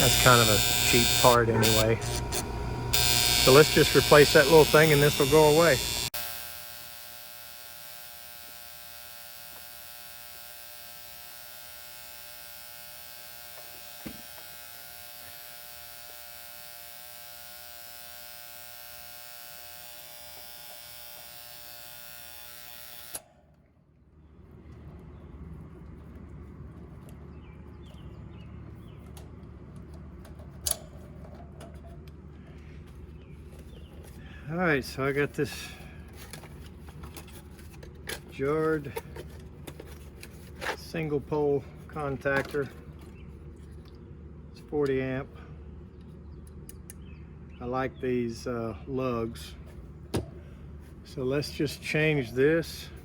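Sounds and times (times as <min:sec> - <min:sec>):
contactor relay electrical buzz: 0:00.0 - 0:23.6, 0:33.6 - 0:43.2.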